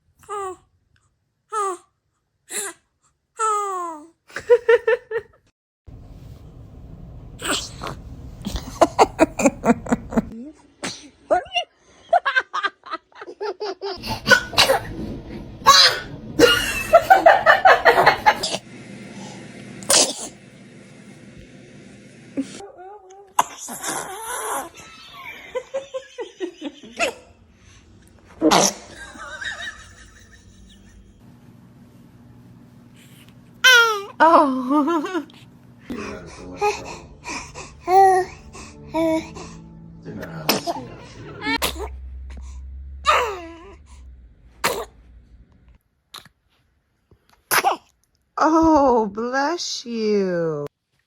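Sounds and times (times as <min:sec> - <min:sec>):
laughter: 0:04.3 - 0:05.5, 0:08.6 - 0:10.4, 0:11.3 - 0:14.8, 0:16.4 - 0:18.4, 0:24.8 - 0:27.3, 0:28.9 - 0:31.2
baby sneezing: 0:07.4 - 0:08.0, 0:10.8 - 0:11.2, 0:19.9 - 0:20.3, 0:28.4 - 0:28.9, 0:41.5 - 0:41.9, 0:44.6 - 0:45.0, 0:47.5 - 0:48.0
baby vocalizing: 0:33.6 - 0:34.2, 0:34.9 - 0:39.6, 0:41.4 - 0:44.0.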